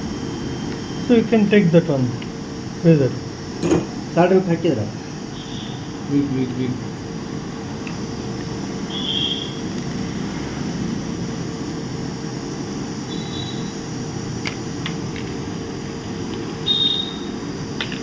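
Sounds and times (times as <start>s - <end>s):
low hum of bench equipment: 1.8s - 8.8s.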